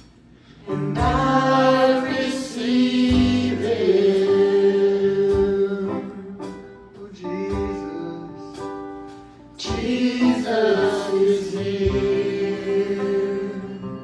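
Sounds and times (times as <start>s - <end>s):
held chords: 0.0s - 14.0s
gospel worship singing: 0.4s - 14.0s.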